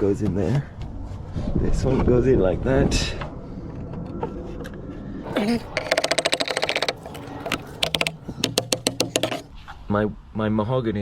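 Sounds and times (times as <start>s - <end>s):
short voiced sound: 5.3s - 7.1s
rapid mechanical clicking rattle: 5.4s - 9.5s.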